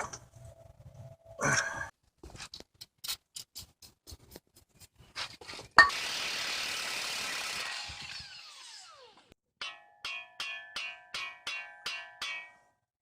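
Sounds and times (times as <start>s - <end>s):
ringing metal strike: 9.6s - 12.6s.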